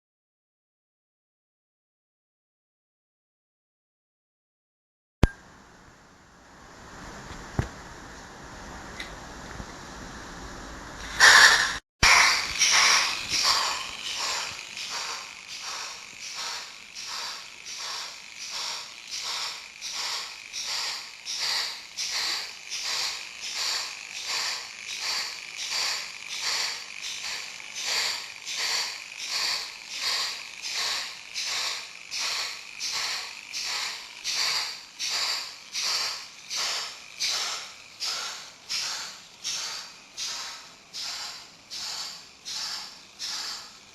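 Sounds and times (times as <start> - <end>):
model steam locomotive chuffing: 10.9 - 43.9.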